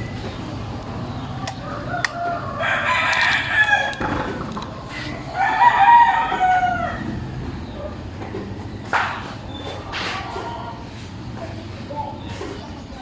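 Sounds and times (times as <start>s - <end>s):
rooster crowing: 1.6s - 4.4s, 5.0s - 7.4s.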